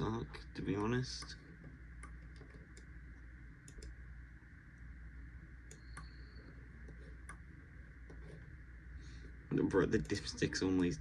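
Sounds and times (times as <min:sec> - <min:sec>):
low electrical hum: 0:00.0 - 0:11.0
computer mouse clicking: 0:02.0 - 0:03.0, 0:03.6 - 0:04.0, 0:05.6 - 0:07.4.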